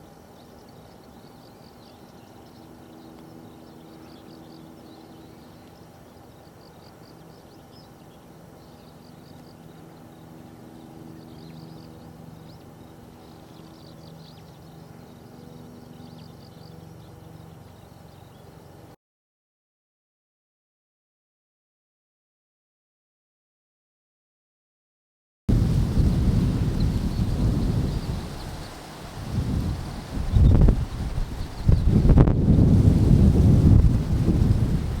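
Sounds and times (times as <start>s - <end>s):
low steady hum: 0.0s - 19.0s
small birds chirping: 0.0s - 19.0s, 25.9s - 32.3s.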